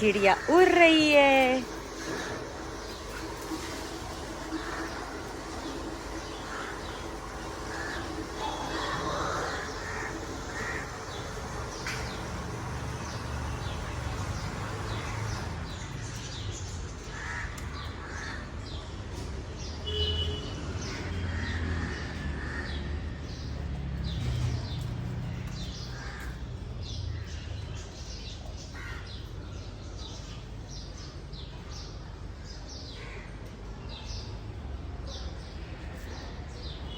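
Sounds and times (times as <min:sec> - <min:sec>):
harsh bird calls: 0:00.0 - 0:19.0
birds chirping: 0:00.0 - 0:36.9.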